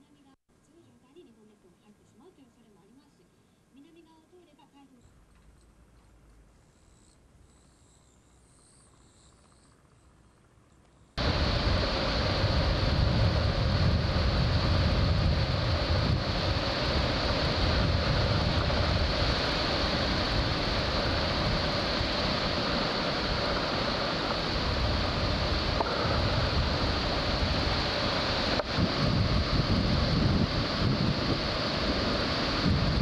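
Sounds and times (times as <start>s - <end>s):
rough surf: 11.2s - 33.0s
strong wind: 11.2s - 33.0s.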